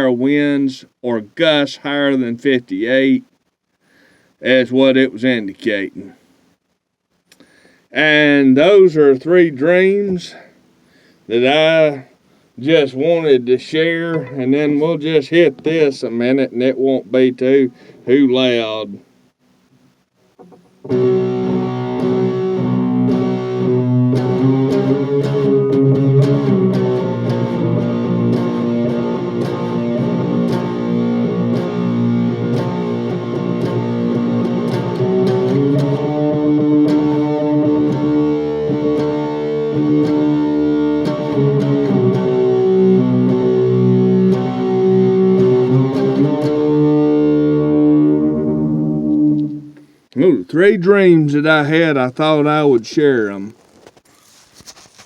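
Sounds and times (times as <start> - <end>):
guitar playing chords: 12.7 - 18.8, 20.4 - 50.0.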